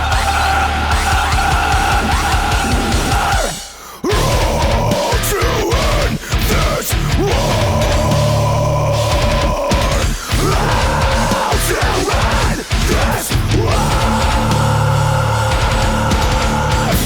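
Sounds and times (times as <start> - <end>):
loud background music: 0.0 - 17.0.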